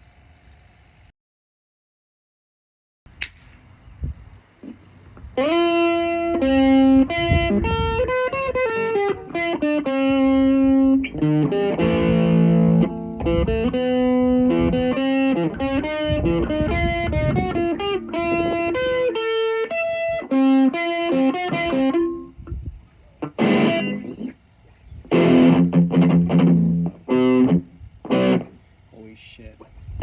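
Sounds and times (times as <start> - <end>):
sharp click: 3.2 - 3.6
strummed guitar chord: 5.4 - 22.4, 23.2 - 24.3, 25.1 - 28.5
guitar melody: 5.4 - 24.4, 25.0 - 28.6.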